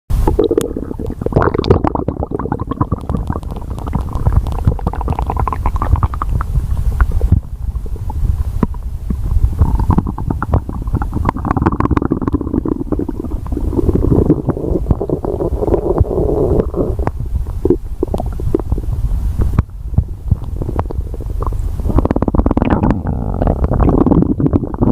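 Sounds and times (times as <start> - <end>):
stomach growling: 0.2 - 24.9.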